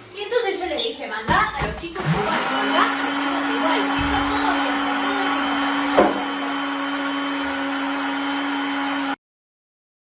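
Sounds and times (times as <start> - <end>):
electric blender running: 1.4 - 9.2
short knock: 5.9 - 6.4.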